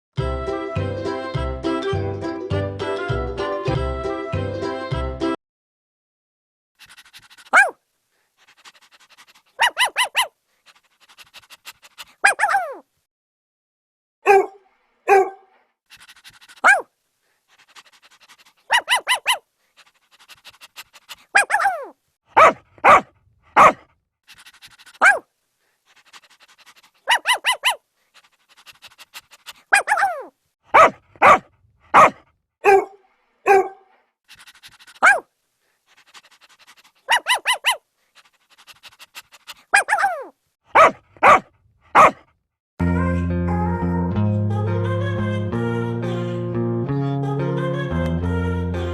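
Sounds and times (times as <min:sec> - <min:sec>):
dog barking: 0:07.2 - 0:07.8, 0:09.6 - 0:10.3, 0:12.2 - 0:12.8, 0:14.2 - 0:15.6, 0:16.6 - 0:16.9, 0:18.7 - 0:19.4, 0:21.3 - 0:23.9, 0:24.8 - 0:25.3, 0:27.0 - 0:27.8, 0:29.7 - 0:34.0, 0:34.8 - 0:35.3, 0:37.0 - 0:37.8, 0:39.5 - 0:42.3.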